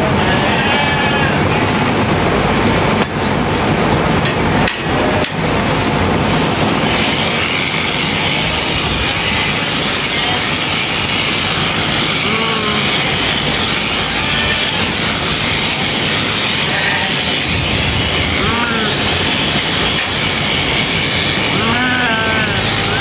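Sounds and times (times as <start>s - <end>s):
electric shears running: 6.1s - 23.0s.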